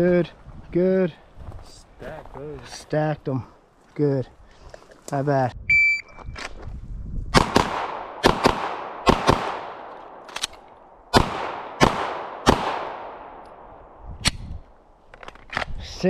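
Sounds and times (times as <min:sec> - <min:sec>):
gunshots with ringing echo: 0:07.4 - 0:10.3, 0:11.1 - 0:13.8.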